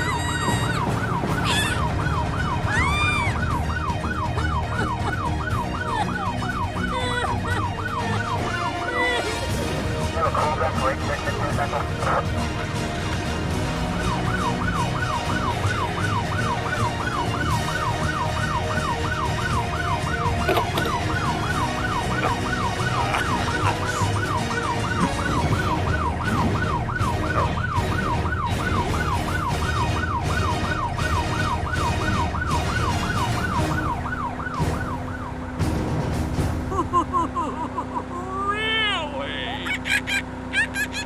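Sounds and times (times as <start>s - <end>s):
yelp siren wailing: 0.0s - 35.7s.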